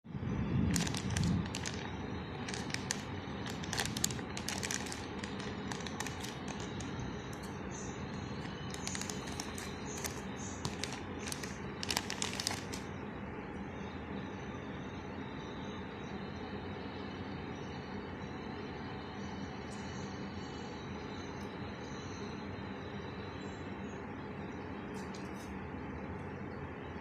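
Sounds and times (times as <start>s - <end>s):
steady background noise: 0.1s - 27.0s
crinkles and clicks of handling: 0.7s - 12.9s.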